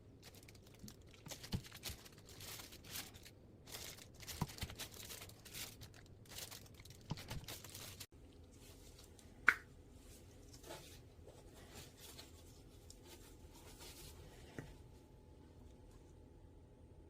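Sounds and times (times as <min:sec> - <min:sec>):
packaging crinkling and tearing: 0:00.2 - 0:08.1.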